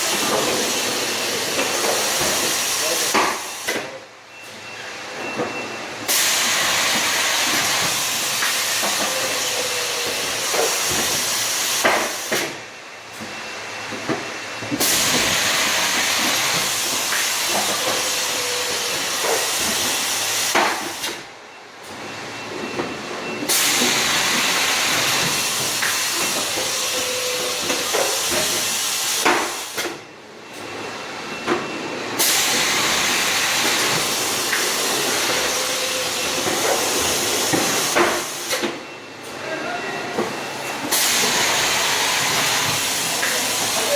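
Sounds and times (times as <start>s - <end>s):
machine air hiss: 0.0s - 3.8s, 6.1s - 12.6s, 14.8s - 21.3s, 23.5s - 30.0s, 32.2s - 38.6s, 40.8s - 43.9s.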